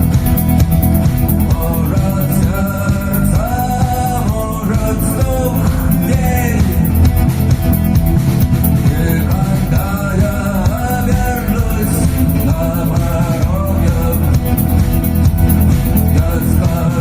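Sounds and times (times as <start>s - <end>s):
bass guitar: 0.0s - 17.0s
drums: 0.0s - 17.0s
electric guitar: 0.0s - 17.0s
person singing: 1.4s - 7.2s, 8.8s - 15.0s, 15.7s - 17.0s.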